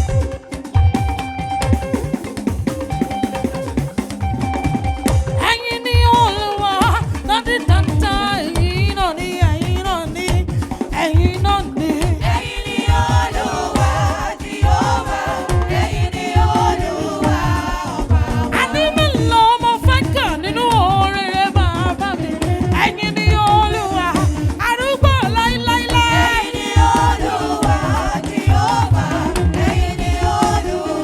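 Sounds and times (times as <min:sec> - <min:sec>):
drums and bass beat: 0:00.0 - 0:31.0
gospel singing: 0:05.4 - 0:31.0.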